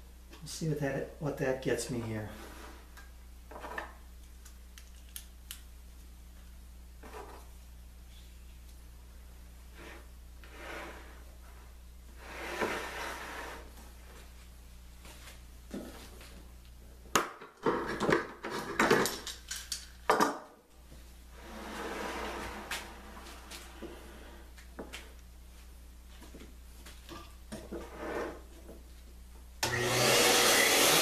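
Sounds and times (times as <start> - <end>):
wood rubbing and sliding: 12.2 - 13.8, 21.4 - 24.1.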